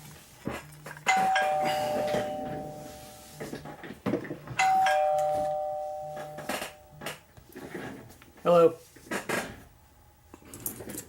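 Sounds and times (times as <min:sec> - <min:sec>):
phone ringing with two-note chime: 0:01.1 - 0:03.5, 0:04.6 - 0:07.0.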